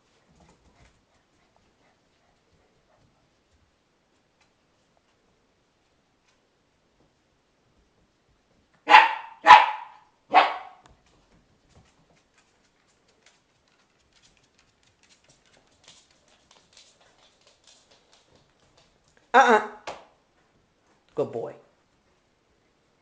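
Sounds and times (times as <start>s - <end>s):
puppy barking: 8.8s - 10.8s.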